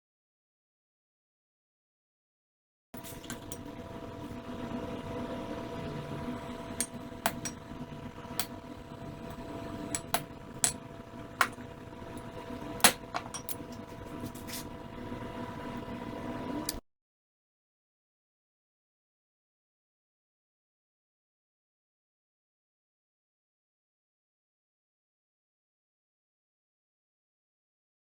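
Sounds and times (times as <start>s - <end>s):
faint hum: 3.0s - 16.8s
metallic taps on steel: 9.3s - 13.8s.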